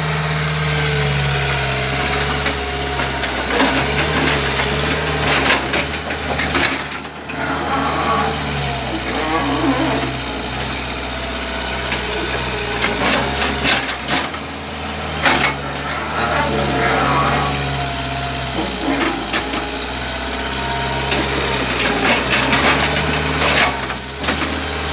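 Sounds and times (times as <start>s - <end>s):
excavator diesel engine running: 0.0s - 24.9s.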